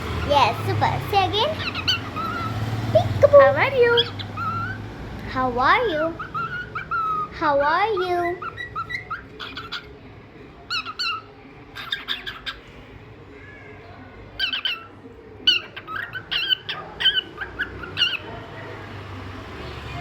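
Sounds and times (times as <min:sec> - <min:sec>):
cockatiel chirping and whistling: 0:01.6 - 0:02.5, 0:04.0 - 0:04.8, 0:06.2 - 0:07.4, 0:08.0 - 0:09.9, 0:10.7 - 0:12.6, 0:14.4 - 0:14.9, 0:15.5 - 0:18.3.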